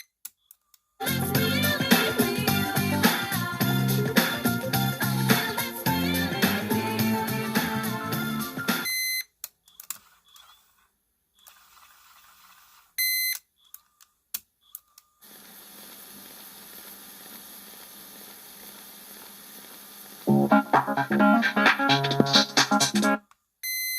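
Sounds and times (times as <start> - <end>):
background music: 1.0 - 8.9, 20.3 - 23.2
steady hiss: 15.2 - 20.3.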